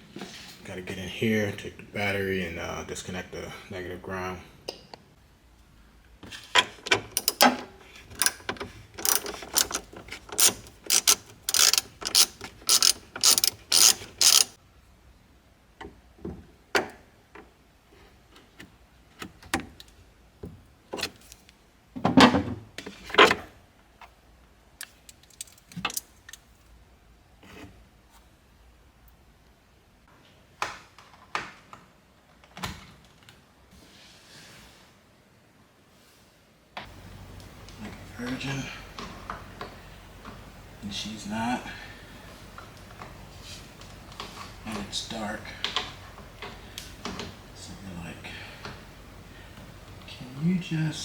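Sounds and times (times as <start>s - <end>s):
ratchet wrench clicking: 8.2s - 8.4s, 9.0s - 14.6s.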